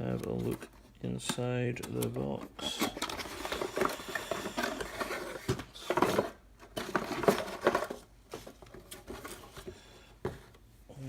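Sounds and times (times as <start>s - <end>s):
packaging rustling: 1.8s - 9.7s.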